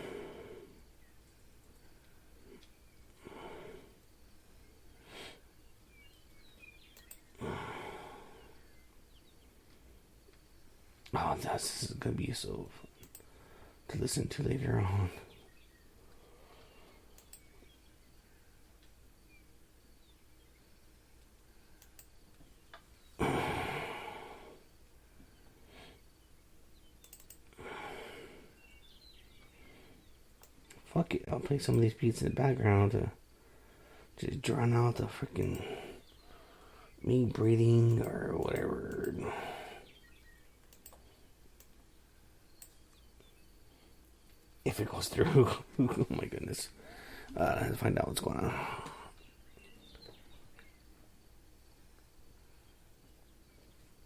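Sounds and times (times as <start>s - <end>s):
man breathing heavily: 0.0s - 0.9s, 3.2s - 4.1s, 7.4s - 8.8s, 13.2s - 13.8s, 23.2s - 26.1s, 27.5s - 28.6s, 35.6s - 37.0s, 46.8s - 47.4s, 48.4s - 49.2s
man exhaling heavily: 7.4s - 8.4s, 23.2s - 24.6s.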